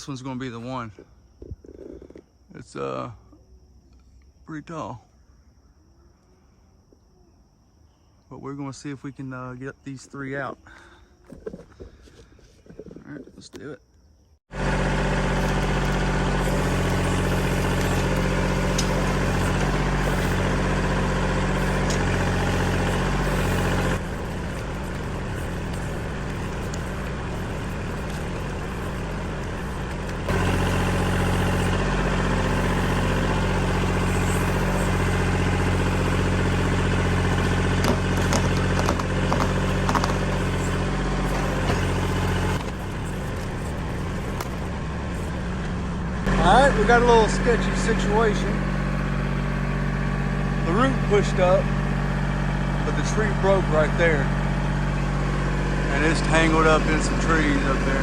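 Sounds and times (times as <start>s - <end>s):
tractor diesel engine running: 14.5s - 58.0s
knocks and clunks: 37.4s - 46.4s.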